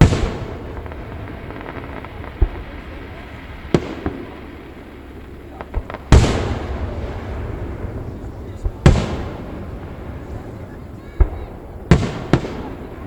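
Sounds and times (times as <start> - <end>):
fireworks bursting: 0.0 - 13.0.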